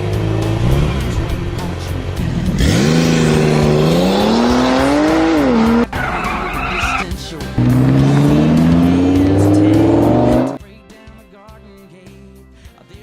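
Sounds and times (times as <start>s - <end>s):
race car engine revving: 0.0s - 7.0s, 7.6s - 10.6s.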